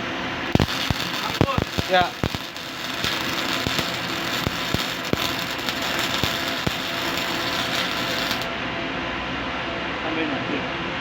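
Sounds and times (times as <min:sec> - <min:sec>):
welding arc crackling: 0:00.4 - 0:08.6
spatter pops: 0:00.5 - 0:08.5.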